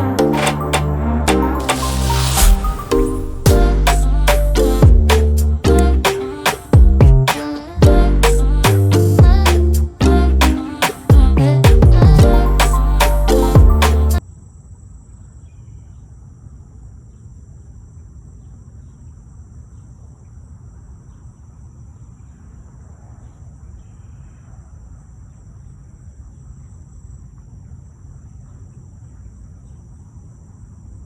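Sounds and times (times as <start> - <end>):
low steady rumble: 6.8 - 10.4, 11.1 - 13.8.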